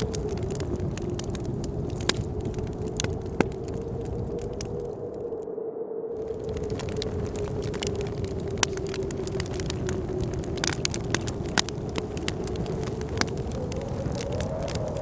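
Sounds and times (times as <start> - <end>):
wood fire crackling and popping: 0.0 - 5.4, 6.2 - 15.0
howling blizzard wind: 0.0 - 15.0.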